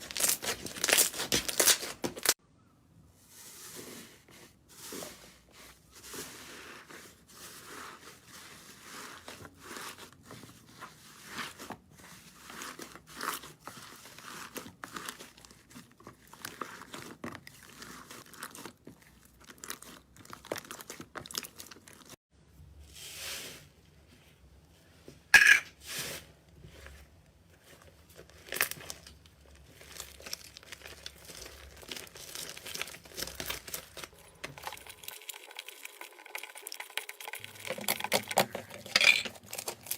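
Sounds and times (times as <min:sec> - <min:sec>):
slime crackling and popping: 0:00.0 - 0:02.4, 0:28.4 - 0:35.2.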